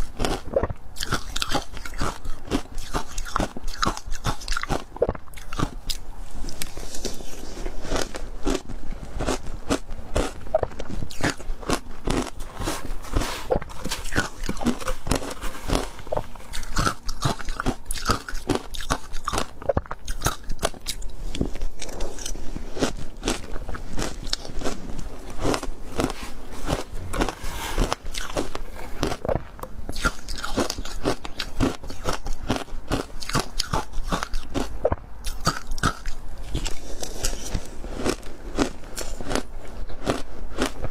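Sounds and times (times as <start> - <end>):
ice being chewed: 0.0 - 40.9.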